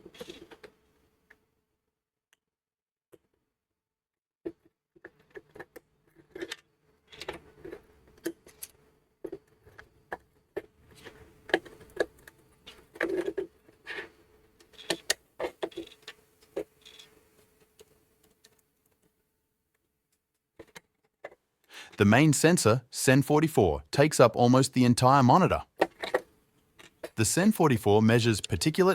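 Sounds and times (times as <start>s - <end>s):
plastic parts clicking and scraping: 0.0s - 0.7s, 4.5s - 19.2s, 20.1s - 21.4s, 25.8s - 27.2s.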